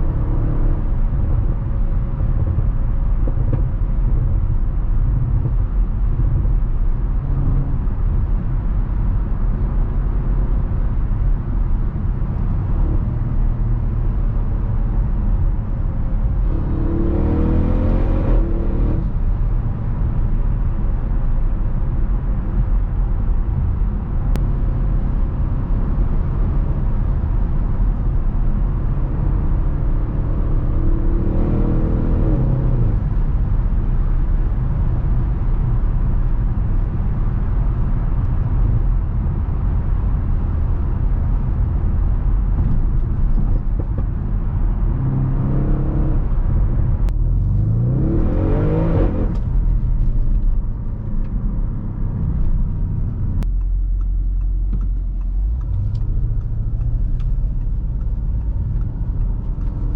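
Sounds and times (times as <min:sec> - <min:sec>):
car engine rumbling and revving: 0:00.0 - 0:59.9.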